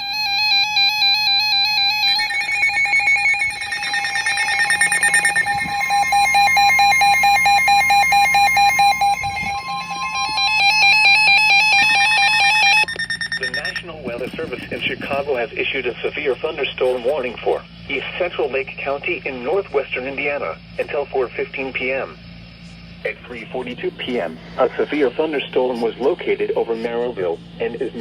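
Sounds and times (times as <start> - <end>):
steady tone: 0.0 - 17.8, 20.6 - 28.0
warbling electronic tones: 0.0 - 17.8
fast even beeping: 0.0 - 18.1.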